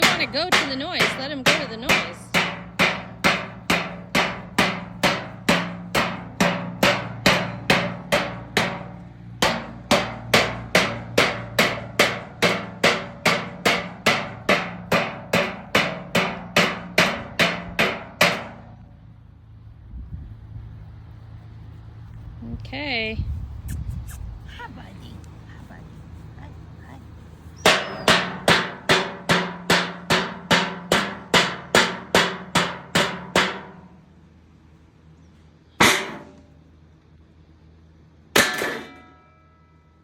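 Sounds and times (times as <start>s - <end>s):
loud ringing banging: 0.0s - 18.8s, 27.6s - 34.0s, 35.8s - 36.6s, 38.3s - 40.0s.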